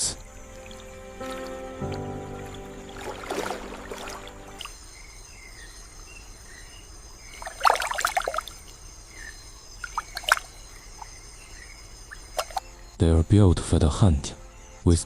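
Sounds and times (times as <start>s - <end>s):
water splashing and trickling: 0.0s - 5.0s, 7.2s - 12.6s.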